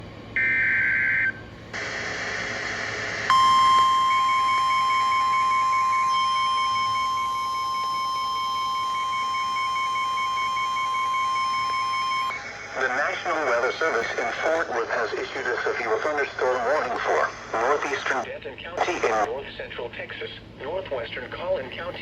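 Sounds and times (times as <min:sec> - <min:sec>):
static hiss: 0:01.8 - 0:03.9, 0:12.3 - 0:19.3
rapid high alarm beeps: 0:03.3 - 0:12.8.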